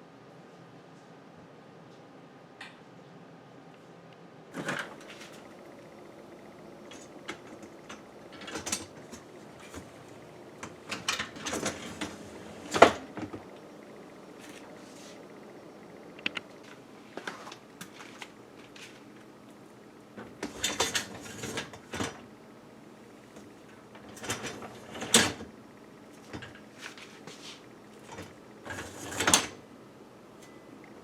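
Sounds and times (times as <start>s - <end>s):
dishwasher rack rattling and clicking: 6.8s - 13.4s, 20.4s - 22.2s.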